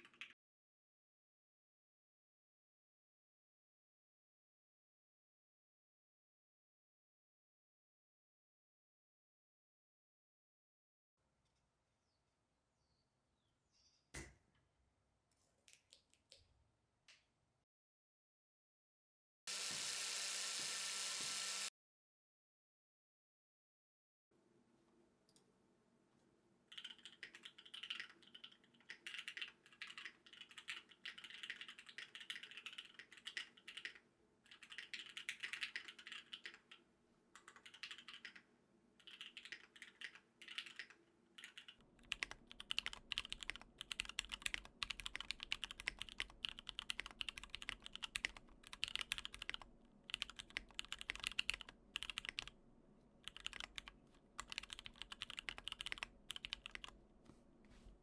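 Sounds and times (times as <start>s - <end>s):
mechanical keyboard typing: 0.0s - 0.3s, 26.7s - 36.8s, 37.4s - 38.4s, 39.0s - 52.5s, 53.2s - 57.0s.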